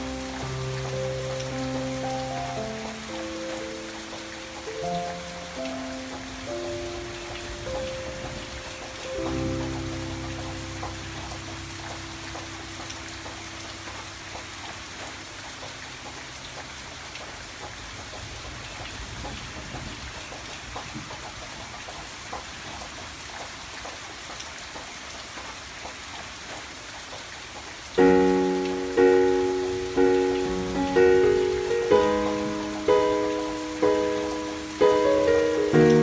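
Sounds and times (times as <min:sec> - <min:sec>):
loud keyboard-like notes: 0:00.0 - 0:14.2, 0:28.0 - 0:36.0
background music: 0:00.0 - 0:14.5, 0:28.0 - 0:36.0
rain pattering: 0:00.0 - 0:36.0.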